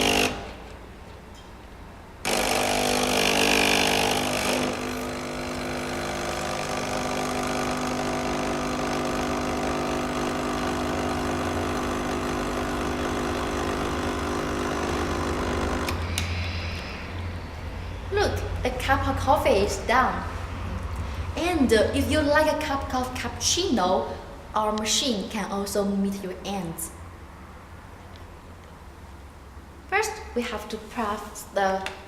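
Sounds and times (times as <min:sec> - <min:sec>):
espresso machine pump humming: 0:00.0 - 0:00.6, 0:02.3 - 0:17.0.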